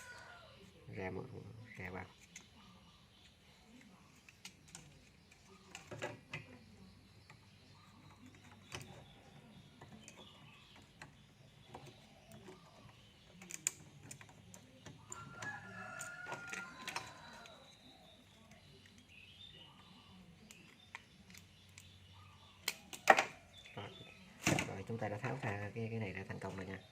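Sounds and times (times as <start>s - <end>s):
rooster crowing: 0.0s - 0.6s, 15.2s - 17.6s.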